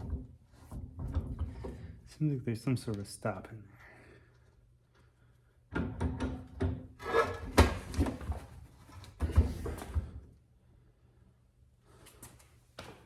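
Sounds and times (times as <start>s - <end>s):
clunks and knocks of drill press: 0.0s - 1.9s, 5.7s - 8.4s.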